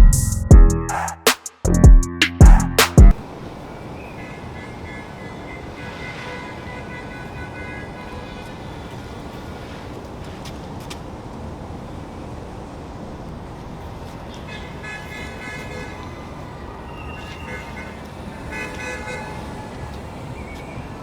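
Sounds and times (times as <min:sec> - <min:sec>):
traffic noise: 0:02.5 - 0:21.0
vehicle horn: 0:04.1 - 0:08.7, 0:17.4 - 0:19.7.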